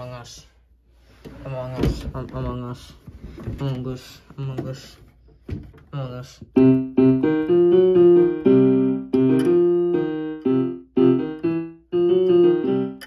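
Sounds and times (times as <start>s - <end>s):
piano chords: 6.5s - 13.0s.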